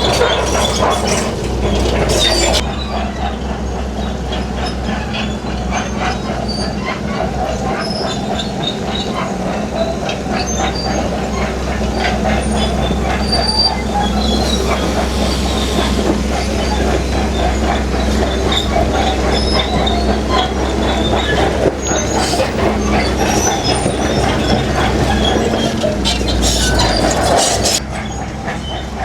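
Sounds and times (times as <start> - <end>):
diesel engine under load: 0.0 - 29.0
steel tracks clanking and squealing: 0.0 - 29.0.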